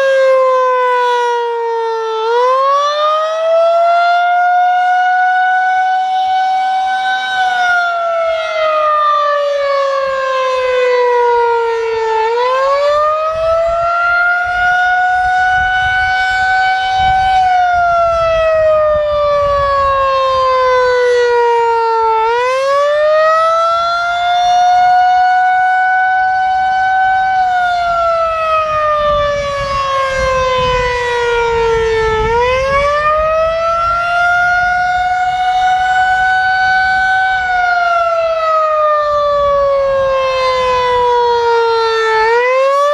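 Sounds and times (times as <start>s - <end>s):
warning siren winding: 40.1s - 42.9s.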